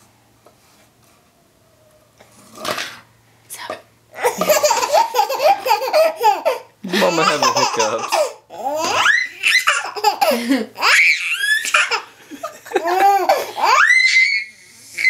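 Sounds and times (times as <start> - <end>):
baby laughing: 4.2 - 14.5.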